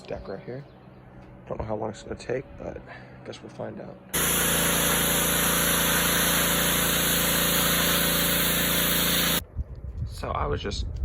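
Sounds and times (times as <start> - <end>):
high-pressure water spray hissing: 4.2 - 9.4
pressure washer engine running: 4.2 - 9.4.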